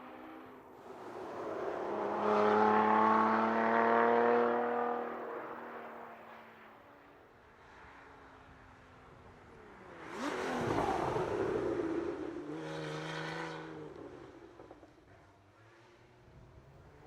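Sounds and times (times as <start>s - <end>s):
car engine accelerating past: 0.2s - 6.1s.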